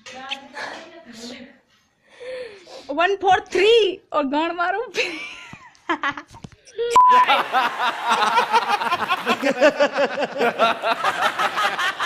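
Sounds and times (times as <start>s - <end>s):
many voices laughing: 7.1s - 12.0s.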